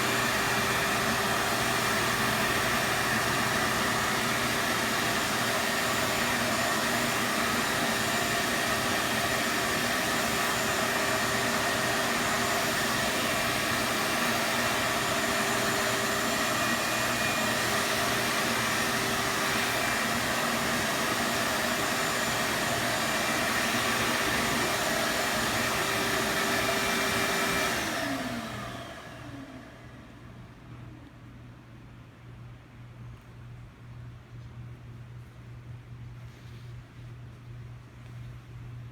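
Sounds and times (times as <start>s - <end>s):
vacuum cleaner motor whining: 0.0s - 31.0s.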